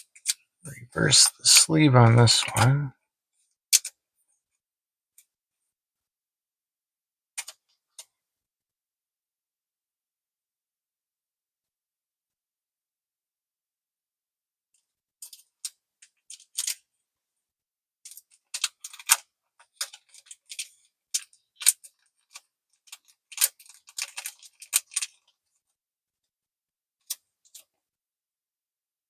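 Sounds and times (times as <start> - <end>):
plastic sleeves clicking: 3.7 - 4.0, 15.2 - 16.9, 18.1 - 25.4
plastic pages rustling: 15.2 - 16.9, 18.1 - 25.7.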